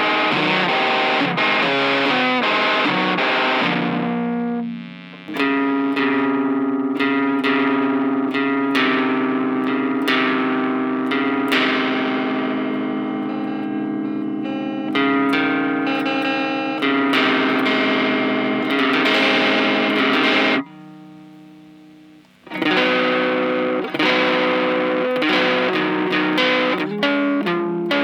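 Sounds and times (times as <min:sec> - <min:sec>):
distorted electric guitar: 0:00.0 - 0:28.0.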